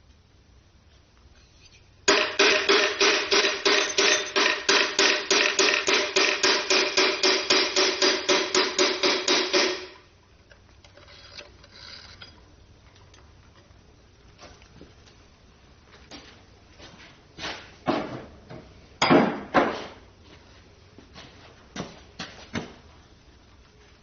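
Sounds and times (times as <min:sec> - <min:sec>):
hammer striking metal: 0:02.1 - 0:10.0.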